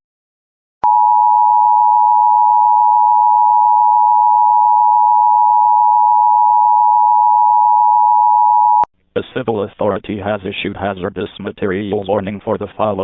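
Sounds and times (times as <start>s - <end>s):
two-tone alarm: 0.8s - 8.9s.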